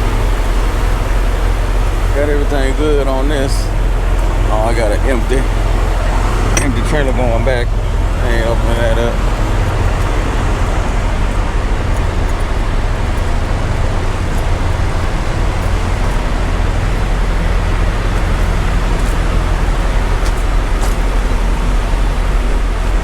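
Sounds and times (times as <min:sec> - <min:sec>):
diesel truck engine idling: 0:00.0 - 0:23.0.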